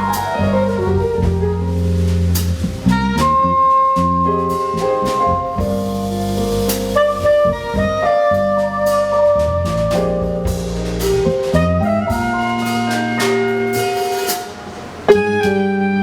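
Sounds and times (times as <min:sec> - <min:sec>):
drum kit with cymbals: 0:00.0 - 0:16.0
soprano saxophone melody: 0:06.9 - 0:10.4, 0:11.6 - 0:16.0.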